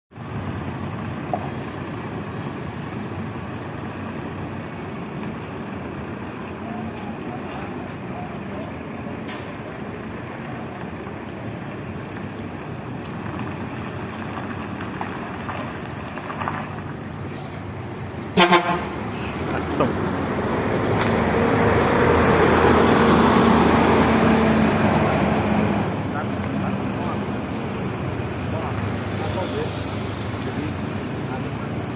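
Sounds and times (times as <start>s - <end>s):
vehicle engine running: 0.1s - 21.2s.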